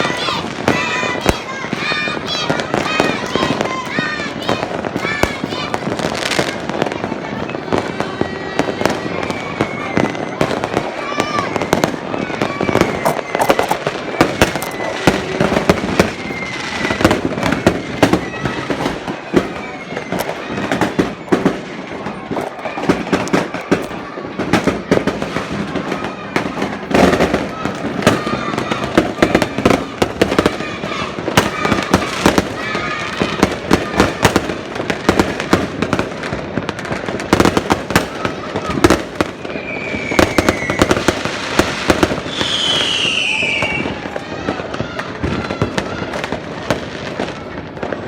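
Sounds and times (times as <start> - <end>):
fireworks bangs and cracks: 0.0 - 48.0
fireworks crackling: 0.0 - 48.0
high descending whistle: 39.5 - 40.9, 42.3 - 44.0.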